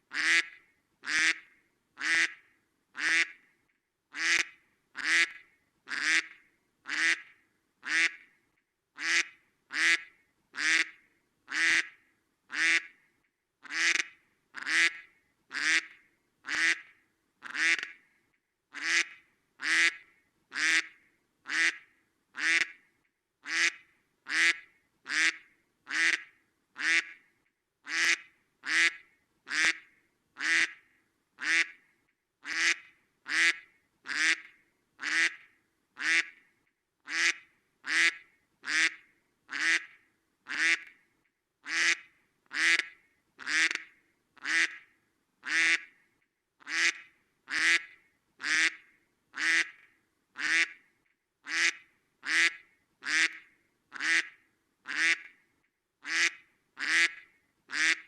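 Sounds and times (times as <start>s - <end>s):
duck quacking: 0.1s - 1.4s, 2.0s - 2.4s, 3.0s - 3.4s, 4.1s - 8.2s, 9.0s - 12.9s, 13.6s - 18.0s, 18.7s - 20.9s, 21.5s - 21.8s, 22.4s - 22.8s, 23.4s - 27.2s, 27.8s - 29.8s, 30.4s - 30.8s, 31.4s - 31.8s, 32.4s - 35.4s, 36.0s - 36.4s, 37.1s - 39.9s, 40.5s - 40.9s, 41.6s - 43.8s, 44.4s - 44.8s, 45.4s - 45.9s, 46.6s - 48.8s, 49.4s - 49.8s, 50.4s - 50.8s, 51.4s - 55.3s, 56.0s - 58.0s.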